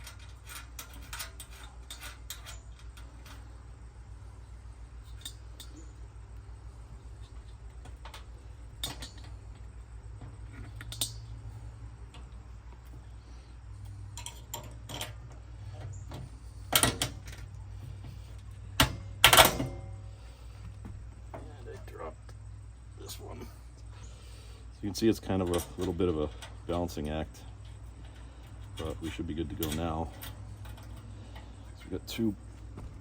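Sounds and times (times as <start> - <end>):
metallic clicks and clinks: 0.0 - 3.4, 10.7 - 11.4, 13.8 - 15.2
steady low hum: 0.0 - 33.0.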